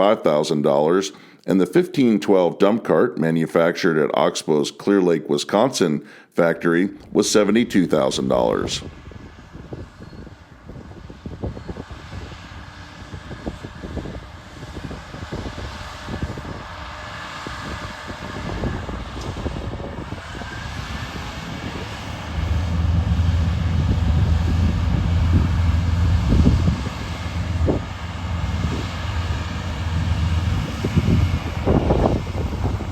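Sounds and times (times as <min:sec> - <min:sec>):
diesel farm machinery running: 0:07.6 - 0:32.9
low thumps: 0:22.2 - 0:32.9.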